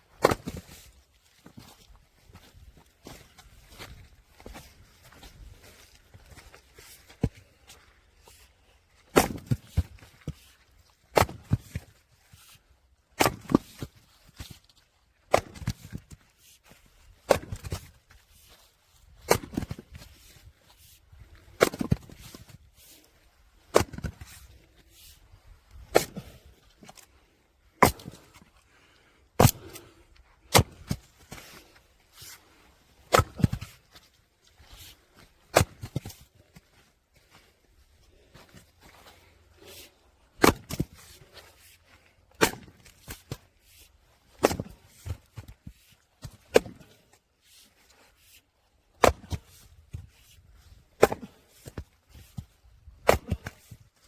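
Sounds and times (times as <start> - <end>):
wood splitting crack: 9.1 - 9.9, 11.1 - 11.8, 13.2 - 13.9, 15.3 - 16.1, 17.3 - 17.9, 21.6 - 22.5, 40.4 - 40.9, 42.3 - 43.3, 44.4 - 44.8, 49.0 - 49.5, 51.0 - 52.2, 53.0 - 53.7.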